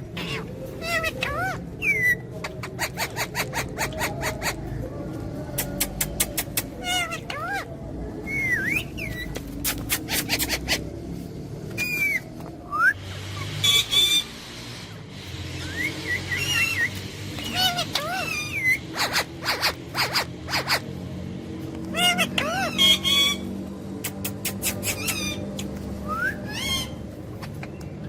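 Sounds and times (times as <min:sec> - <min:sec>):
harsh parrot calls: 0:00.0 - 0:04.7, 0:13.0 - 0:14.5, 0:15.5 - 0:20.9, 0:21.9 - 0:23.5, 0:24.5 - 0:25.5, 0:26.3 - 0:27.7
parrot chirps: 0:11.8 - 0:14.5, 0:15.4 - 0:20.9, 0:21.9 - 0:27.8
parrot whistling: 0:26.0 - 0:27.0.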